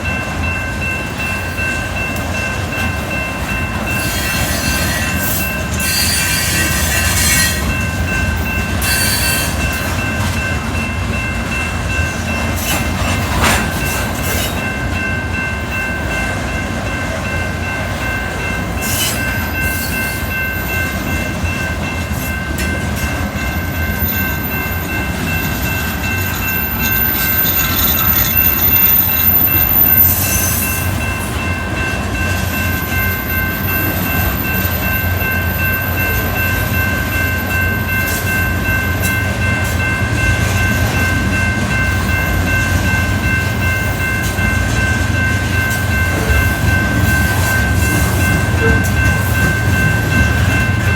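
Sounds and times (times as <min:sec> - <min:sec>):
train wheels rumbling on rails: 0:00.0 - 0:50.9.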